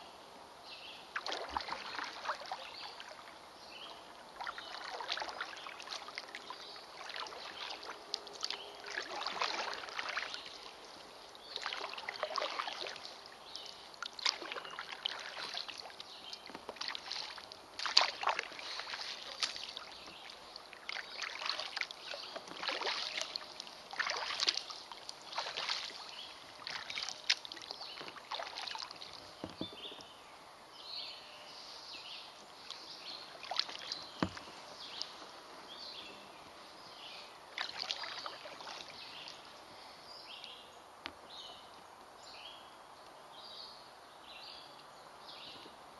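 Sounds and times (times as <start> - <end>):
paddle splashing through water: 1.1 - 30.1, 33.0 - 36.2, 37.0 - 39.4.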